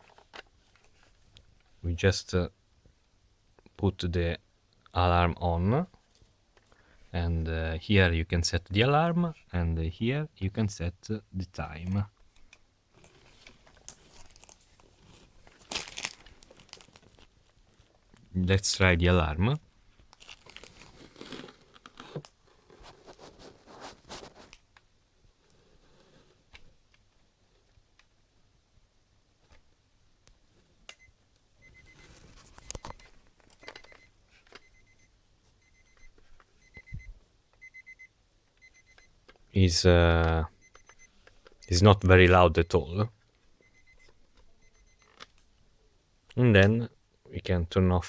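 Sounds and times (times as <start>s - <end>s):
plastic crinkling and clicking: 12.3s - 18.3s, 20.0s - 23.3s, 32.0s - 34.7s, 44.0s - 45.5s
alarm clock beeping: 31.6s - 32.0s, 33.7s - 39.1s, 40.6s - 43.0s, 43.6s - 45.1s.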